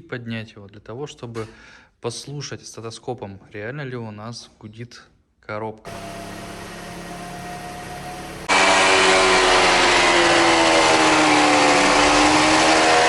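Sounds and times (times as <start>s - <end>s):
gearbox humming: 5.9s - 13.0s.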